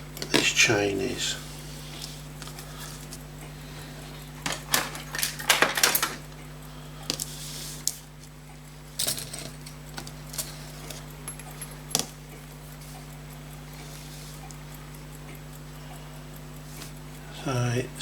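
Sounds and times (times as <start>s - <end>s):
steady low hum: 0.0s - 18.0s
metal watch parts clicking: 4.2s - 16.0s.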